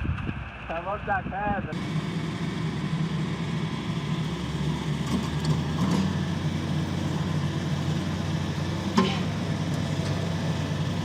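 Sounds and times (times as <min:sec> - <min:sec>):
vehicle engine humming: 0:00.0 - 0:11.0.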